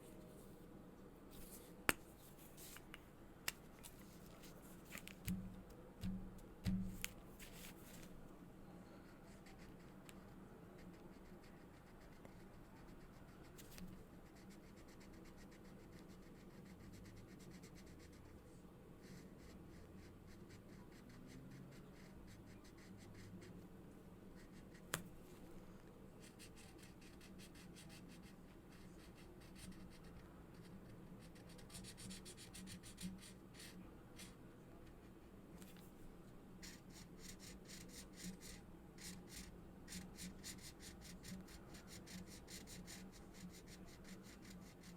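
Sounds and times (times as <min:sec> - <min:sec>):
marker scratching on paper: 0:26.2 - 0:34.4, 0:36.6 - 0:44.9.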